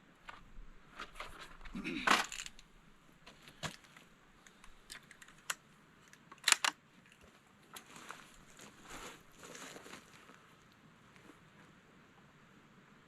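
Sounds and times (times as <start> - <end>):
cartridges clicking into magazine: 4.4 - 6.8.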